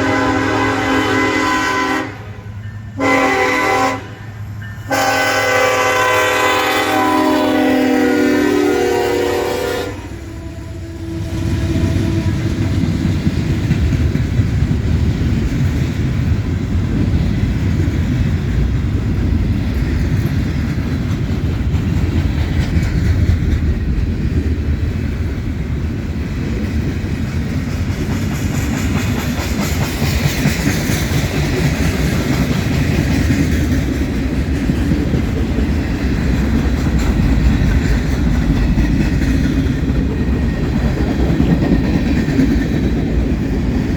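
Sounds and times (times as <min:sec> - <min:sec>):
freight train rumbling past: 0:00.0 - 0:43.9
wheels clattering on rails: 0:11.3 - 0:43.9.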